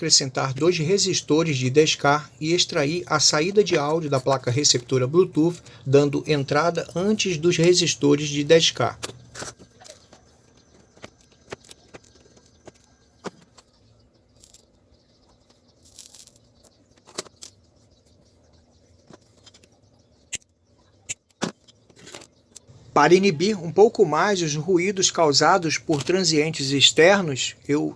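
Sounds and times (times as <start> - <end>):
small parts clicking: 14.4 - 14.8, 15.8 - 17.6.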